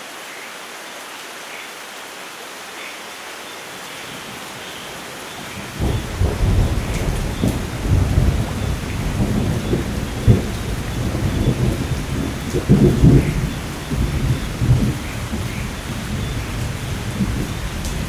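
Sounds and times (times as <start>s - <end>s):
rain hissing: 0.0s - 18.0s
thunder roll with sharp cracks: 5.5s - 18.0s.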